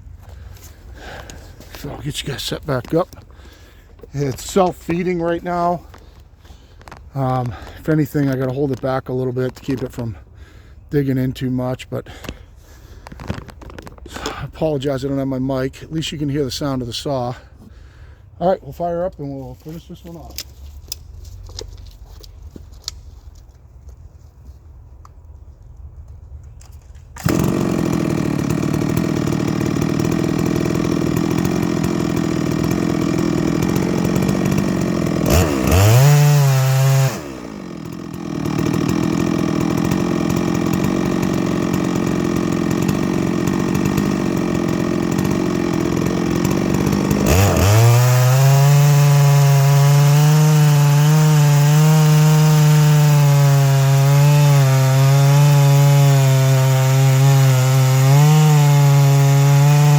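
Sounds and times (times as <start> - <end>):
chainsaw cutting wood: 0.1 - 10.7, 12.0 - 17.5, 26.7 - 59.9.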